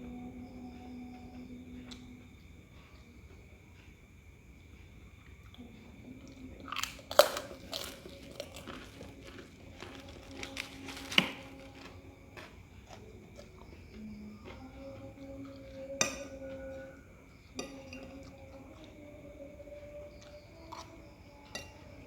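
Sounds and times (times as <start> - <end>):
person chewing food: 4.7 - 22.0.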